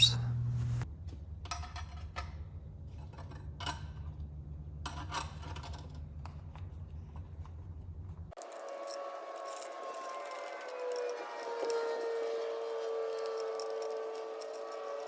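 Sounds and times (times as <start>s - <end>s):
steady low hum: 0.0s - 0.8s.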